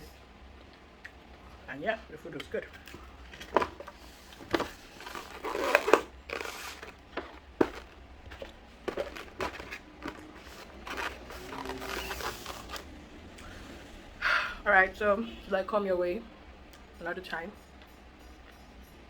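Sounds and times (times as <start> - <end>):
packaging crunching and crinkling: 2.7 - 12.9.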